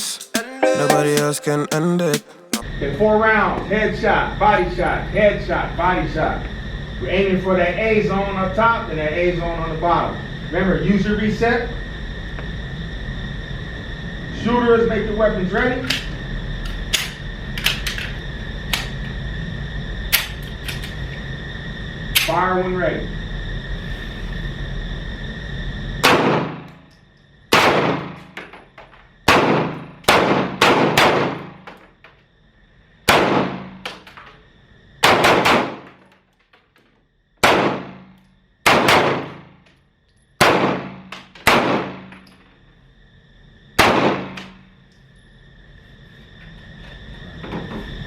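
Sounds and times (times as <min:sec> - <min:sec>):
pistol shots with echo: 0:26.0 - 0:26.6, 0:27.6 - 0:28.2, 0:29.3 - 0:31.6, 0:33.1 - 0:33.8, 0:35.0 - 0:35.9, 0:37.4 - 0:38.1, 0:38.7 - 0:39.5, 0:40.4 - 0:42.2, 0:43.8 - 0:44.6.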